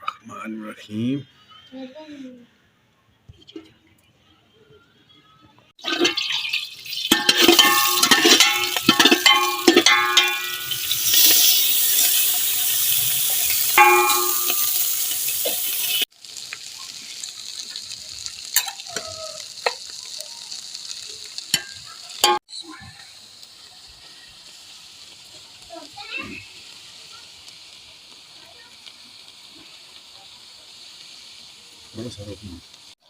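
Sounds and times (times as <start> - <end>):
food sizzling in hot oil: 5.8 - 33.0
metal spoon clanking against pot: 6.0 - 12.6, 13.3 - 16.0, 21.5 - 22.4.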